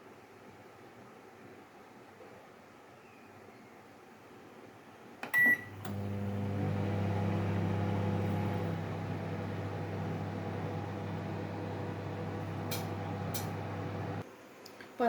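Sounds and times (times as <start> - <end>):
microwave click: 5.2 - 14.2
microwave humming: 5.2 - 14.2
microwave beep: 5.3 - 14.2.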